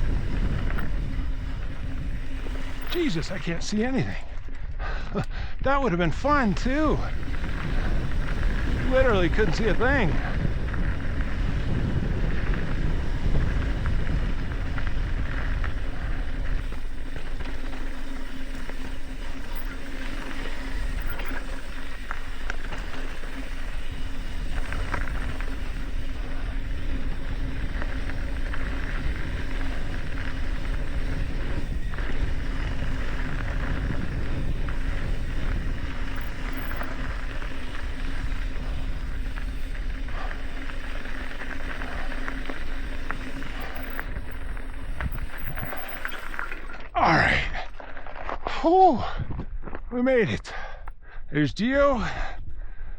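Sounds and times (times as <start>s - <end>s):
bike rattling: 0.0s - 5.5s, 6.1s - 48.6s
wind rushing over microphone: 0.0s - 47.6s
tyres rolling on dirt trail: 0.0s - 50.3s.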